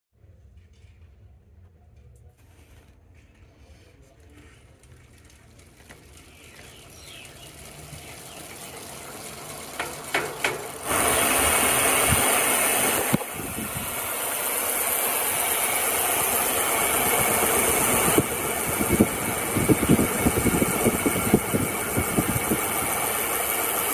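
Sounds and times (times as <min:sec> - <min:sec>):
bicycle freehub ratcheting: 0:04.8 - 0:23.9.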